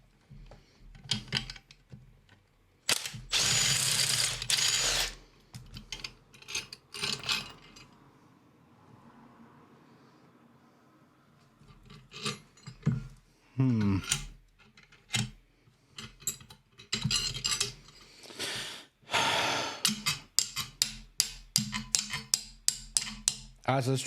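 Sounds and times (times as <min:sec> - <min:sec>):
metal tools clinking and scraping: 0:02.9 - 0:08.0, 0:11.7 - 0:13.0, 0:16.0 - 0:18.0.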